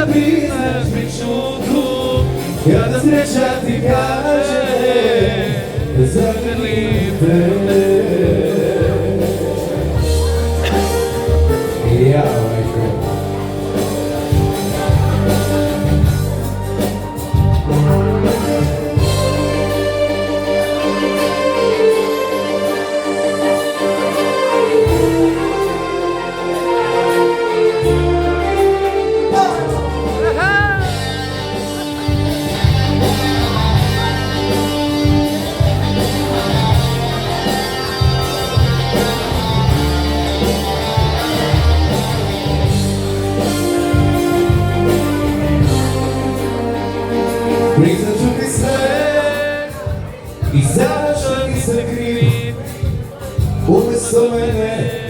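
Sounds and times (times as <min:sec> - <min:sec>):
live band playing: 0:00.0 - 0:55.0.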